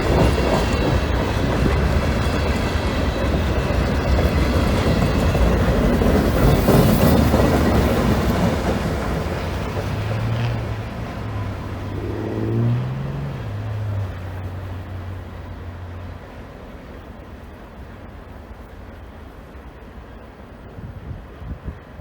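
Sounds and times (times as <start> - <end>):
freight train rumble: 0.0 - 22.0
low diesel engine drone: 9.4 - 16.5.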